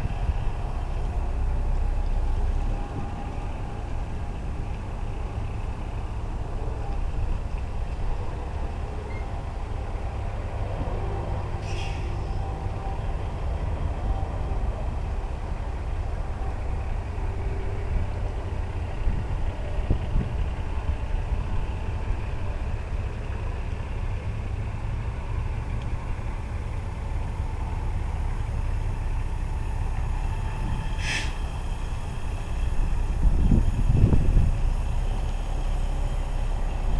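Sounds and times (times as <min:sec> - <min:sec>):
diesel truck engine rumbling: 0:00.0 - 0:36.9
high hiss: 0:30.9 - 0:31.6.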